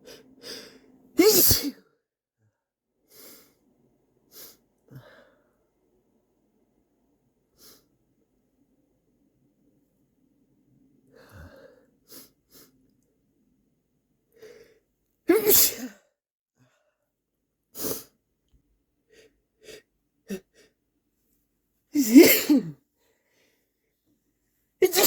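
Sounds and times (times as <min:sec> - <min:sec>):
person sneezing: 0:01.2 - 0:01.8, 0:15.3 - 0:16.0, 0:22.0 - 0:22.8.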